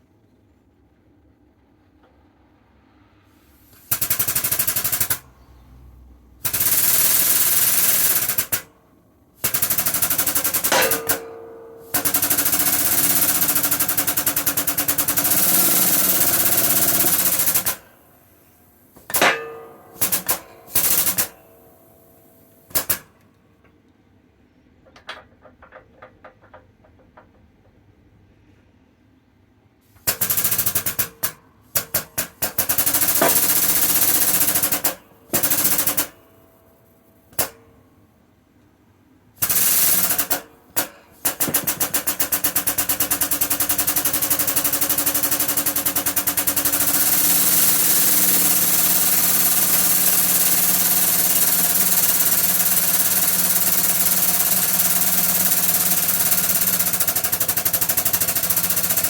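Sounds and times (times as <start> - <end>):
air pump clattering: 3.6 - 5.6, 6.4 - 8.6, 9.4 - 18.0, 18.9 - 21.4, 30.0 - 36.1, 39.4 - 59.0.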